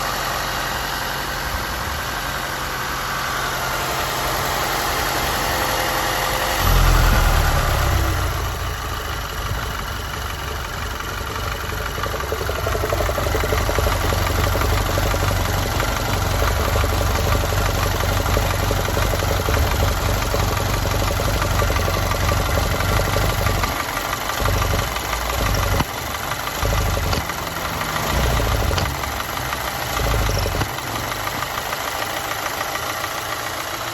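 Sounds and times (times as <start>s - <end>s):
car engine idling roughly: 0.0s - 33.9s
deep hum: 6.3s - 20.2s.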